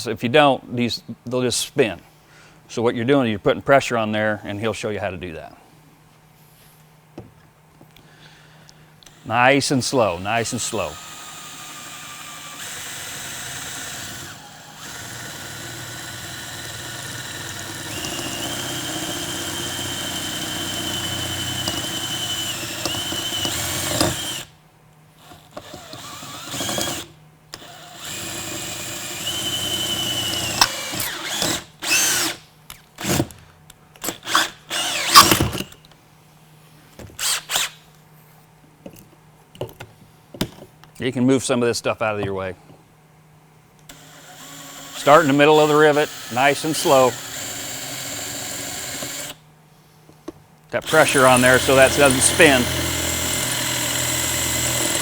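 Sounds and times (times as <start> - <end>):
electric drill whining: 9.0 - 24.5, 25.2 - 32.4, 34.0 - 35.7, 37.2 - 37.8, 43.9 - 49.4, 50.8 - 55.0.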